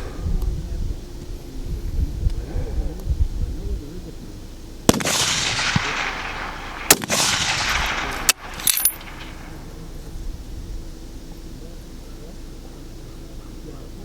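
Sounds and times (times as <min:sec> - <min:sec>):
sharp metallic clicks: 0:04.9 - 0:09.8
high metallic clink: 0:04.9 - 0:10.0
rifle shots: 0:04.9 - 0:10.1
rolling echo: 0:04.9 - 0:10.5.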